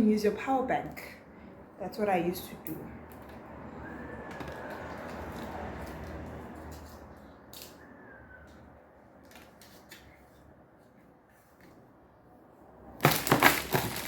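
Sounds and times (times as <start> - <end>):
packaging rustling: 13.0 - 14.0.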